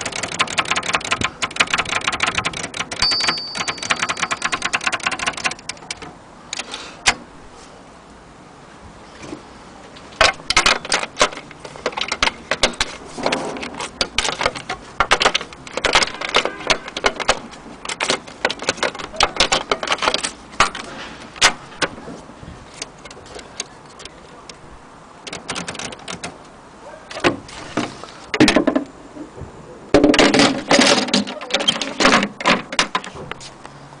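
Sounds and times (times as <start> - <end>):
typewriter key strikes: 0.0 - 6.0, 14.0 - 20.8.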